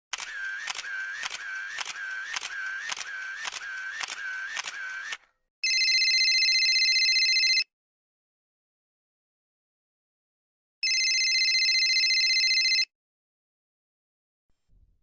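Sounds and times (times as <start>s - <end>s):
sharp mechanical clicks: 0.1s - 5.3s
short whir: 0.1s - 5.3s.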